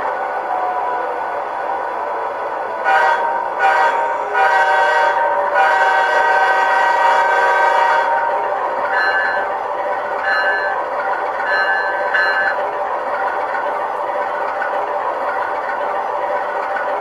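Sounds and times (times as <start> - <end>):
diesel prime mover sound: 0.0 - 17.0
locomotive horn blasts from small speaker: 2.9 - 8.2.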